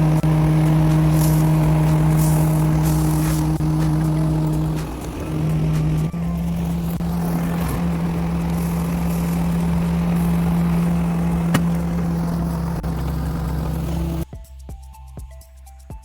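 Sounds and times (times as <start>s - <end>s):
background music with a beat: 0.0s - 10.8s, 14.2s - 16.0s
skid steer engine running: 0.0s - 14.2s.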